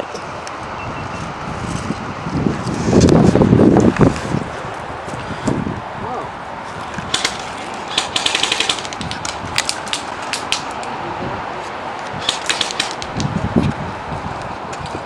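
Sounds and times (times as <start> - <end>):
airsoft guns firing: 7.1 - 10.8, 12.2 - 13.2.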